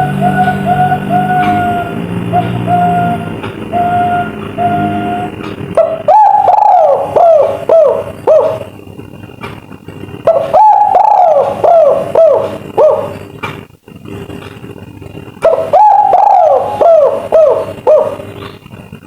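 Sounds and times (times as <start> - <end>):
dove cooing: 0.0 - 8.8, 10.2 - 13.3, 15.4 - 18.7.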